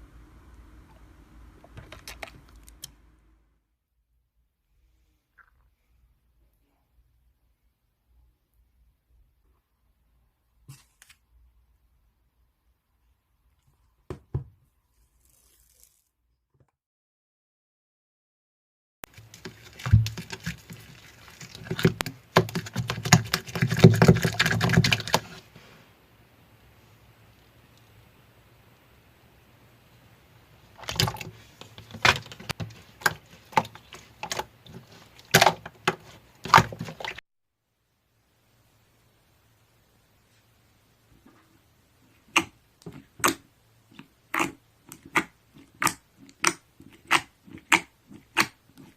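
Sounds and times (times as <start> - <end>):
soft rustle: 14.8 - 16.2.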